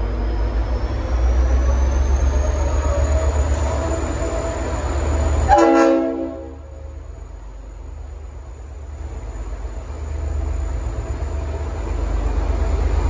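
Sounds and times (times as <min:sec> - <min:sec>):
diesel locomotive engine rumble: 0:00.0 - 0:13.0
train air horn blast: 0:05.5 - 0:06.8.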